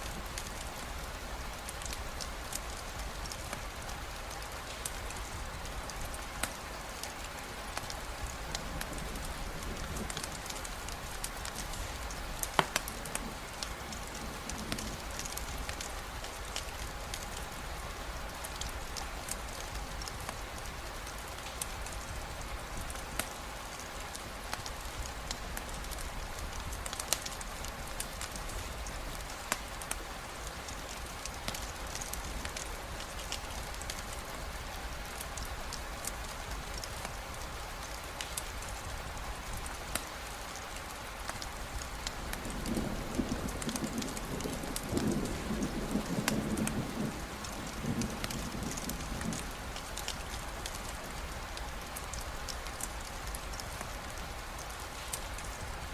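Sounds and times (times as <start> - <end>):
campfire crackling: 0.0 - 55.9
steady rainfall: 0.0 - 55.9
low thunder rumble: 42.2 - 51.4.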